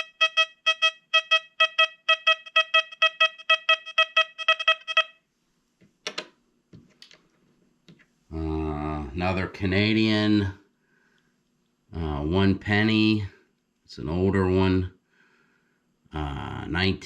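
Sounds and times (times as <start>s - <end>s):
metal detector beeps: 0.0s - 5.2s.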